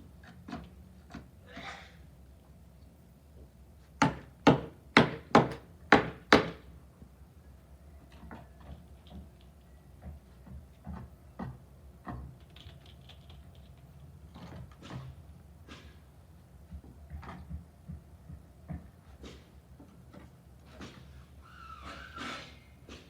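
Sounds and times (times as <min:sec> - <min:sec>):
faint taps and knocks: 0:16.6 - 0:20.3.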